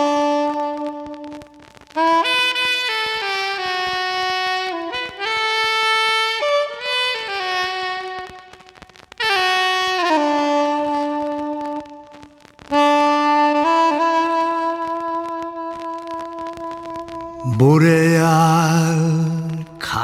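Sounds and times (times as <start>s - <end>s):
reed wind instrument long notes: 0.0s - 20.0s.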